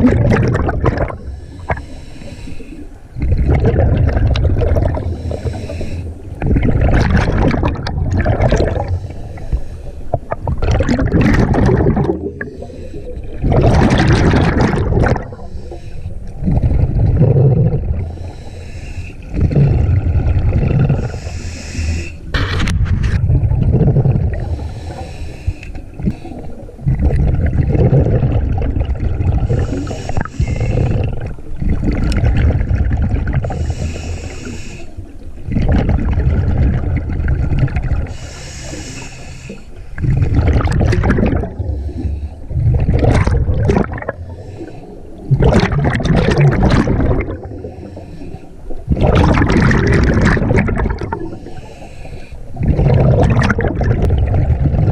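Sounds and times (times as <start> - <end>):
gurgling exhaled bubbles: 0.0 - 2.0, 3.0 - 18.4, 19.2 - 21.4, 22.3 - 25.2, 25.8 - 34.4, 35.1 - 38.8, 39.5 - 51.9, 52.5 - 54.9
hissing regulator inhalations: 1.2 - 3.1, 5.0 - 6.4, 8.8 - 10.2, 12.4 - 13.4, 15.3 - 16.4, 18.0 - 19.3, 21.0 - 22.3, 24.4 - 26.6, 29.5 - 31.2, 33.5 - 35.2, 38.1 - 40.0, 44.2 - 45.3, 47.4 - 48.8, 51.1 - 52.6.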